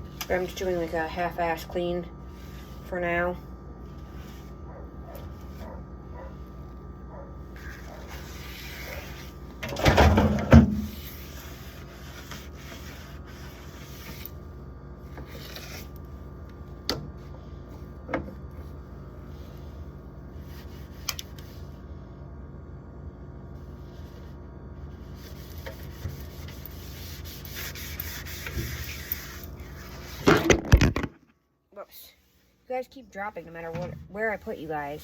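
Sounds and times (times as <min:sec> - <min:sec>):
rubbing and scraping: 0:07.5 - 0:09.6, 0:10.2 - 0:14.3, 0:25.0 - 0:31.1.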